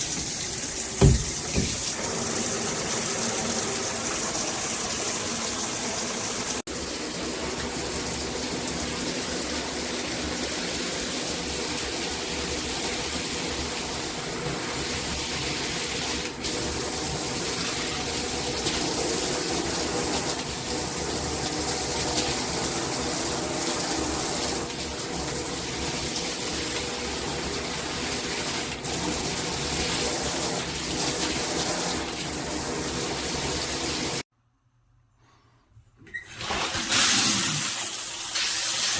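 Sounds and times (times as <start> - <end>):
shower head spraying water: 0.0 - 7.2.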